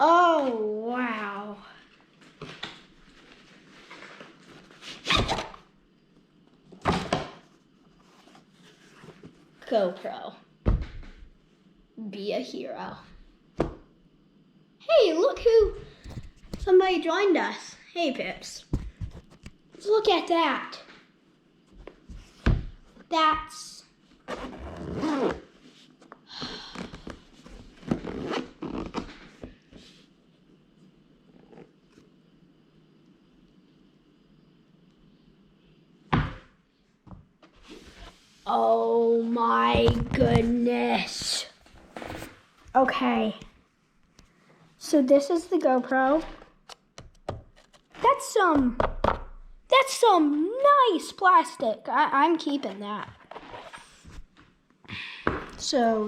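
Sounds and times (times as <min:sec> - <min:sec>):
zipper being pulled open: 0:24.3 - 0:25.5, 0:27.8 - 0:29.1
zipper-like rasps: 0:24.3 - 0:25.5.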